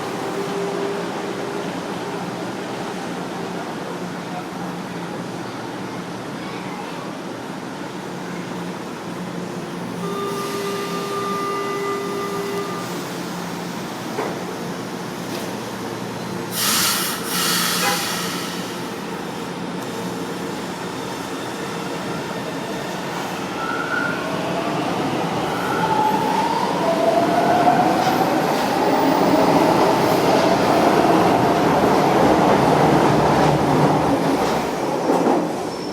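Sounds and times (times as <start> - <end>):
train air hiss: 16.3 - 22.1.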